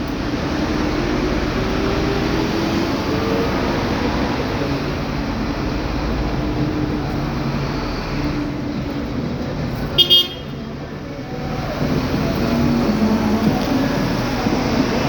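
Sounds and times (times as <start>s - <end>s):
street traffic: 0.0s - 15.0s
car horn toot: 9.9s - 10.6s.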